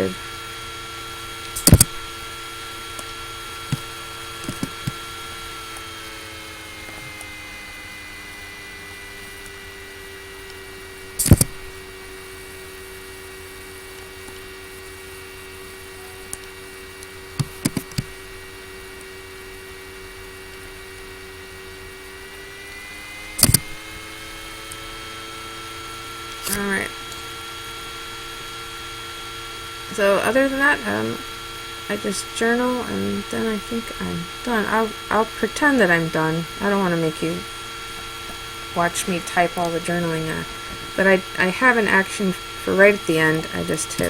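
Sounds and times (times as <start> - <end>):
laptop fan whirring: 0.0 - 44.0
loud sharp clicks: 1.4 - 5.9, 10.4 - 11.7, 16.3 - 18.2, 23.3 - 24.1.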